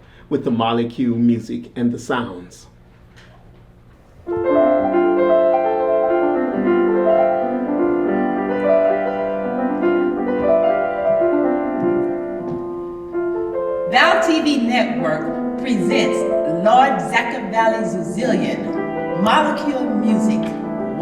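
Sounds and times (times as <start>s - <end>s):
slow piano notes: 4.0s - 21.0s.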